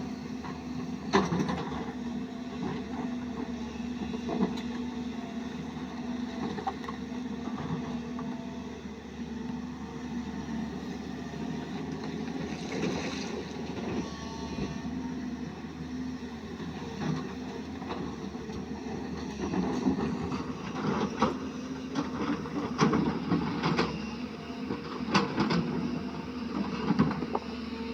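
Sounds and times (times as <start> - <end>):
excavator diesel engine running: 0.0 - 27.9.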